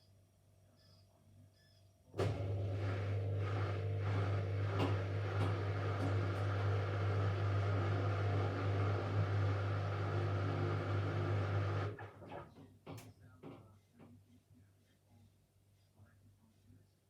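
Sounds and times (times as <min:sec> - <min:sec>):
washing machine humming: 0:02.1 - 0:13.0.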